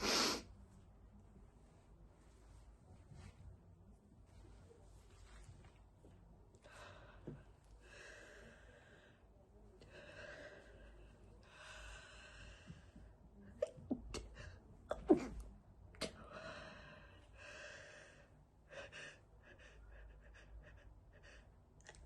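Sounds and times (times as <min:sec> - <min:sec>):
stifled sneezes: 0:14.9 - 0:15.4.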